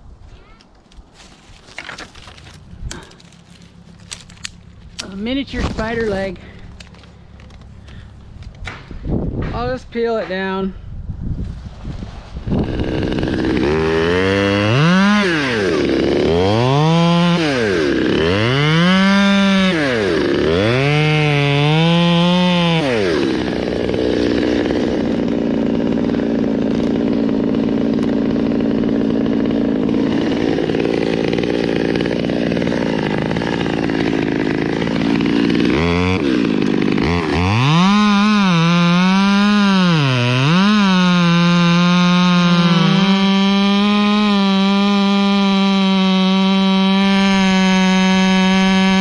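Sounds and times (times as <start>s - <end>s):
chainsaw revving: 2.2s - 8.2s, 12.4s - 49.0s.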